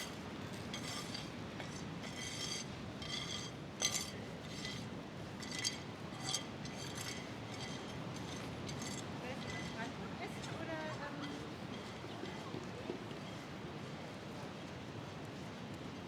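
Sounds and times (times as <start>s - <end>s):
glasses and cutlery clinking: 0.7s - 13.4s
background murmur: 6.0s - 15.5s.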